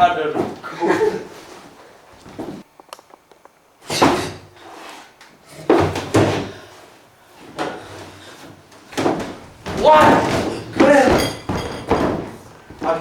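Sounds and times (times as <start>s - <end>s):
door banging shut: 9.0s - 12.8s.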